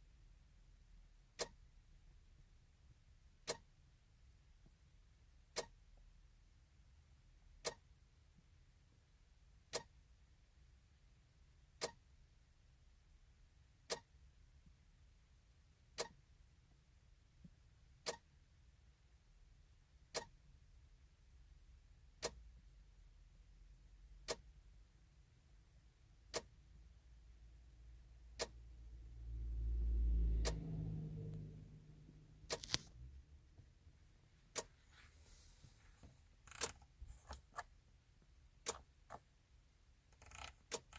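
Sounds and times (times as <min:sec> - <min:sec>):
sharp electrical click: 0:32.5 - 0:33.0, 0:36.4 - 0:37.4, 0:40.1 - 0:40.9.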